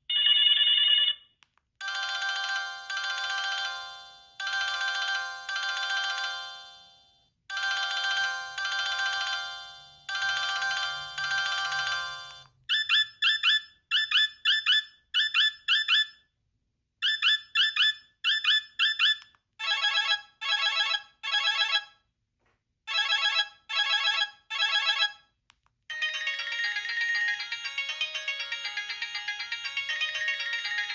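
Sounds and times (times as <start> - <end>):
phone ringtones: 0.1 - 16.2, 17.0 - 22.0, 22.9 - 25.3.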